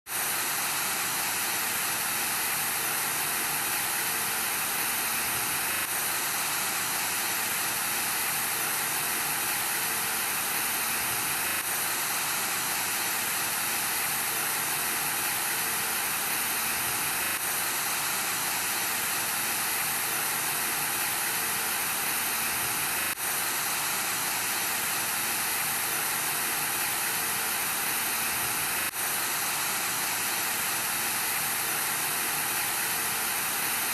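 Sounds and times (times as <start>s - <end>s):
television static hiss: 0.2s - 33.9s.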